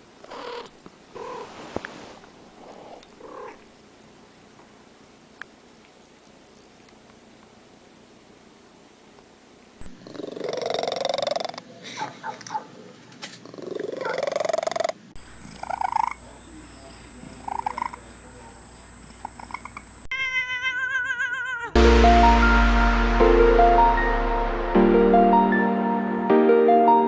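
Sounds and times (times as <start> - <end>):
cats meowing and yowling: 20.1 - 21.8
music: 21.8 - 27.0.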